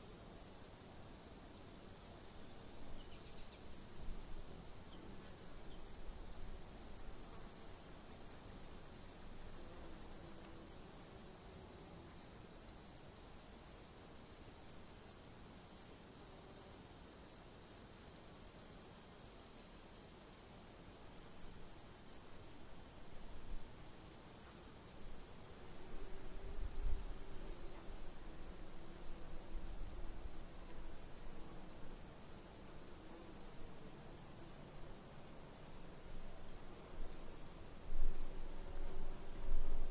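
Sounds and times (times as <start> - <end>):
crickets chirping: 0.5 - 39.9.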